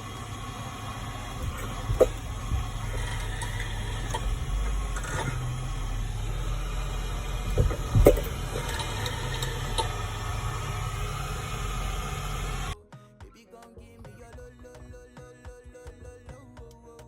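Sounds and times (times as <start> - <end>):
low road rumble: 0.0 - 12.8
suspension knocks: 0.0 - 12.8.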